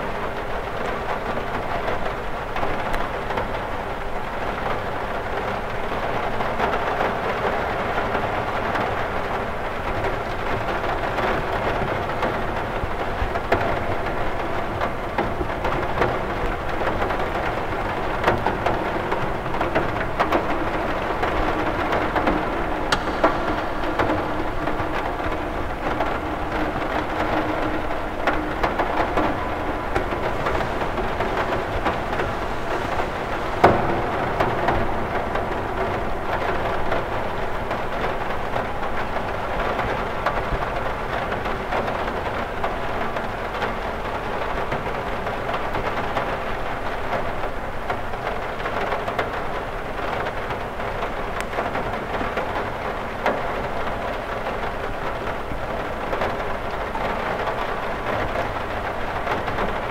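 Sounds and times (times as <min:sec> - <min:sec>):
rain on a window: 0:00.0 - 0:59.9
loud hit on window: 0:21.1 - 0:37.2.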